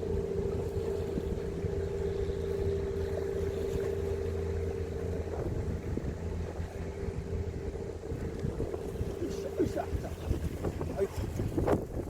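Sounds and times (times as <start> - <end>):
boat engine humming: 0.0 - 12.0
wind noise on microphone: 5.2 - 12.0.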